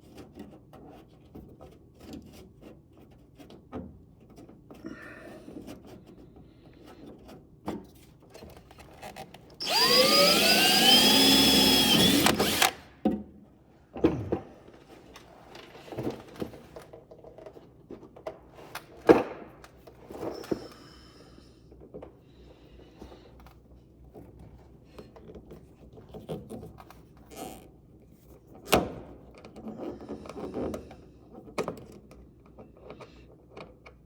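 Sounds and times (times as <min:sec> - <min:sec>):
power drill motor whine: 0:09.6 - 0:12.9.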